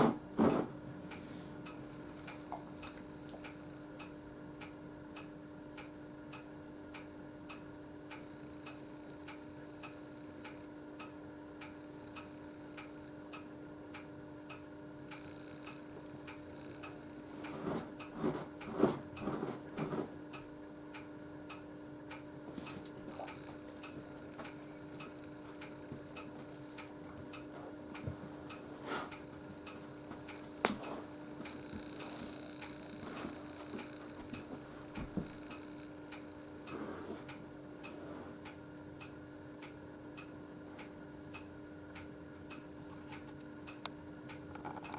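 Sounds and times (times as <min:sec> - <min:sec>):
low steady hum: 0:00.0 - 0:44.9
clock ticking: 0:01.1 - 0:19.4, 0:20.3 - 0:28.6.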